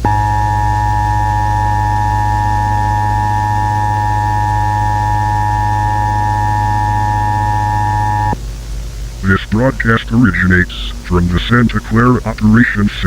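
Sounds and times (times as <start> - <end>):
loud steady two-tone alert tone: 0.0 - 8.4
strong low hum: 0.0 - 13.0.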